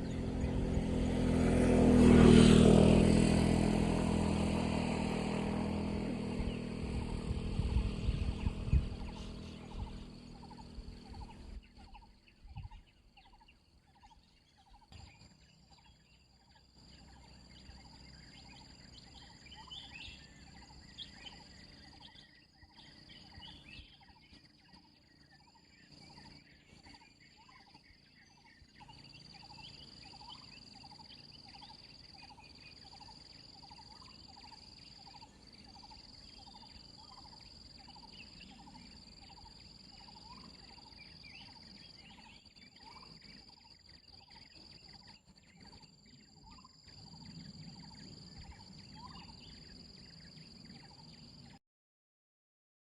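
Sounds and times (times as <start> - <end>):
bird chirps: 0.0 - 2.7, 5.6 - 51.6
high-pitched insect drone: 6.0 - 12.2, 16.8 - 51.4.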